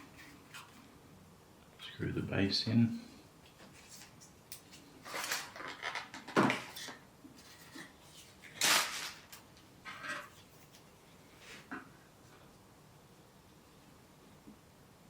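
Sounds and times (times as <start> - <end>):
plastic parts scraping: 5.0 - 10.7.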